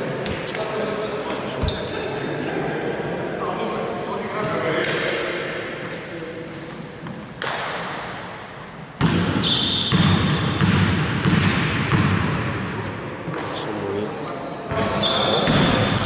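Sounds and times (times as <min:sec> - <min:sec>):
basketball dribbling in a hall: 0:08.9 - 0:12.6, 0:14.7 - 0:16.0
brief high squeak: 0:15.0 - 0:15.5.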